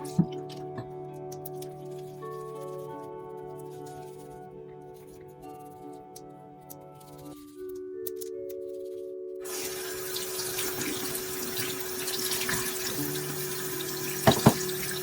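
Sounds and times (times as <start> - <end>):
soft background music: 0.0 - 15.0
water running from tap: 9.4 - 15.0.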